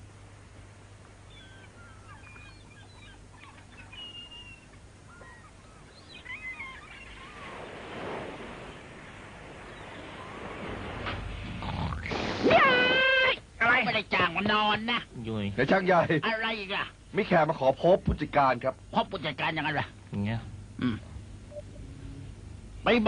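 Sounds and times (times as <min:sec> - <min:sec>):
faint birds chirping: 0:00.0 - 0:12.0, 0:13.7 - 0:23.0
soft rushing noise: 0:07.1 - 0:12.5.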